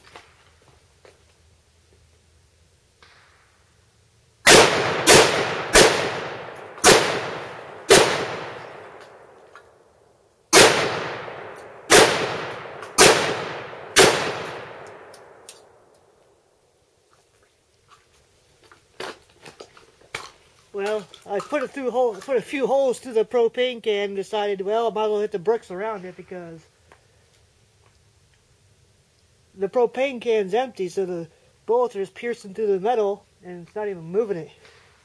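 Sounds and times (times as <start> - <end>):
rifle shots with echo: 4.5 - 9.4, 10.5 - 15.9.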